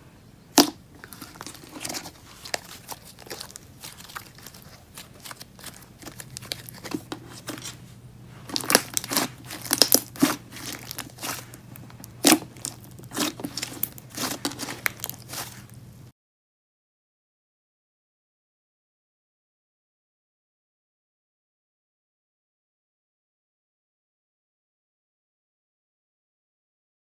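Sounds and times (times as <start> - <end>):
slime squishing with sticky pops: 0.5 - 7.8, 8.4 - 15.8.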